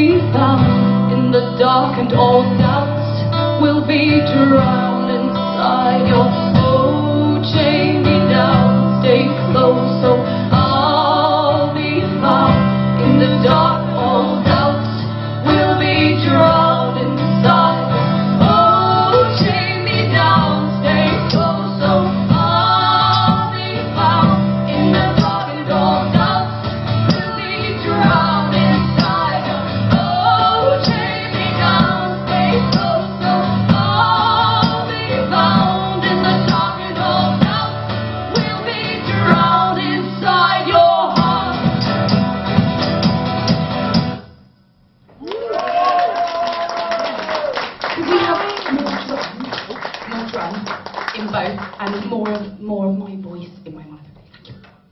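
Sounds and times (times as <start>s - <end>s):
women singing with vibrato: 0.0s - 42.2s
strummed acoustic guitar: 4.2s - 44.2s.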